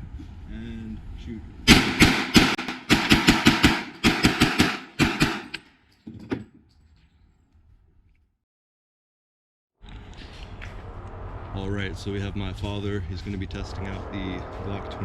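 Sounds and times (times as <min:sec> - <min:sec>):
pistol shots: 0:01.7 - 0:05.6.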